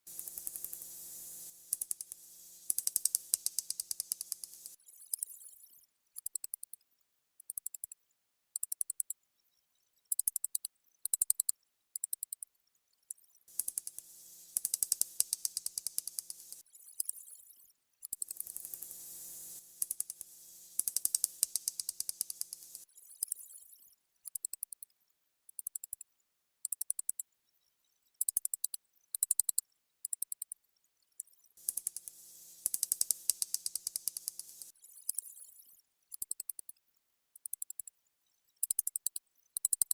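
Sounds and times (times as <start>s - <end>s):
rapid thin high clicks: 0.1s - 4.8s, 13.5s - 16.6s, 18.2s - 22.8s, 31.6s - 34.7s.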